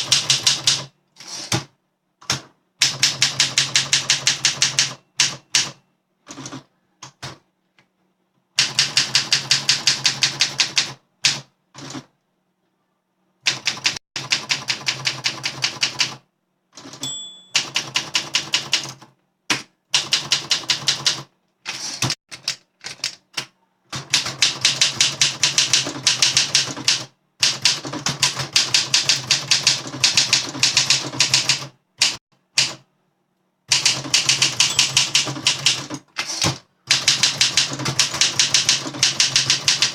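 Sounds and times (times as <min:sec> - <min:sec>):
manual typewriter typing: 0:08.6 - 0:12.1, 0:16.8 - 0:19.1, 0:20.0 - 0:32.8, 0:33.7 - 0:39.9
typewriter bell ringing: 0:17.0 - 0:18.0, 0:34.6 - 0:35.5.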